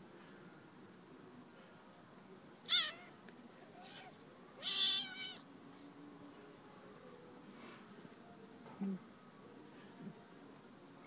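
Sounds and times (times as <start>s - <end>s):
cat meowing: 2.7s - 3.1s, 3.8s - 5.4s.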